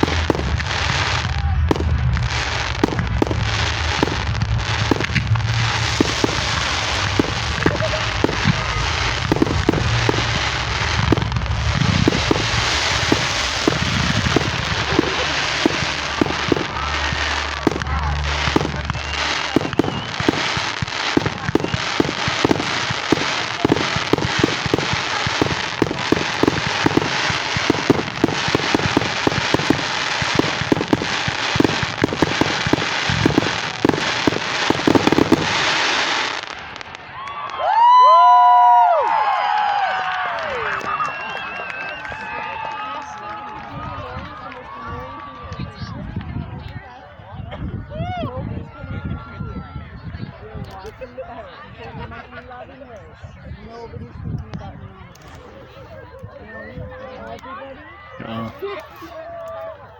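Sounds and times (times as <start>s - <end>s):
deep rumbling firework booms: 0.0s - 37.1s
fireworks crackling and popping: 0.0s - 46.8s, 54.3s - 56.3s.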